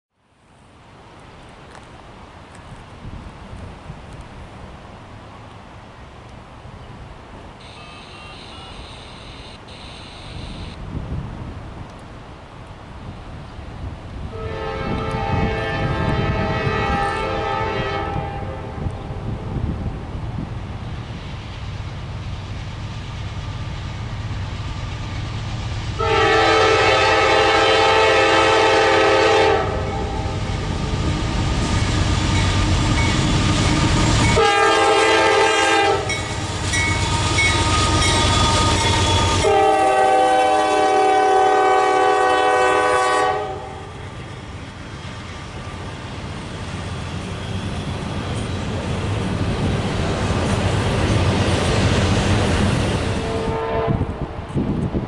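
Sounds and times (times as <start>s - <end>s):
train rumbling: 0.6s - 55.0s
locomotive air horn blasts: 7.6s - 10.8s, 14.3s - 18.8s, 26.0s - 30.4s, 34.3s - 36.3s, 37.0s - 43.9s, 53.2s - 54.3s.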